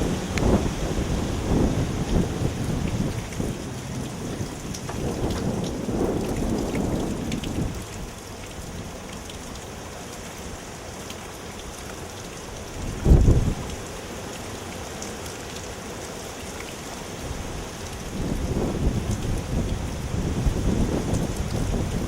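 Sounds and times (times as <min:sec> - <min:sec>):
heavy rain hiss: 0:00.0 - 0:22.0
rain drop ticks: 0:00.3 - 0:00.6, 0:01.5 - 0:13.9.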